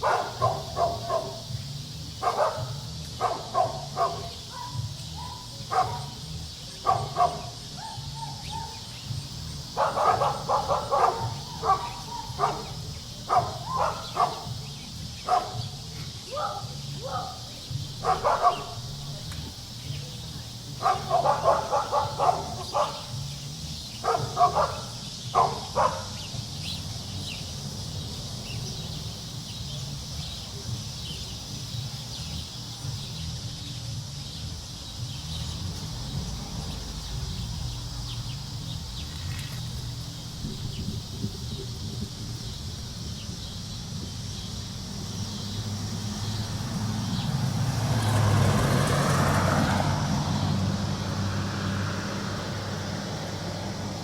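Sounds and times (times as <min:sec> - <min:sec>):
dog barking: 0:00.0 - 0:01.5, 0:02.2 - 0:06.2, 0:06.8 - 0:08.9, 0:09.8 - 0:14.6, 0:15.2 - 0:18.9, 0:20.8 - 0:23.2, 0:24.0 - 0:26.2.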